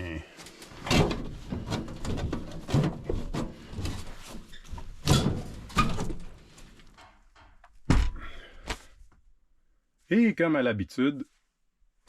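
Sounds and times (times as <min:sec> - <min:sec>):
hard objects knocking and clunking: 0:00.8 - 0:08.3.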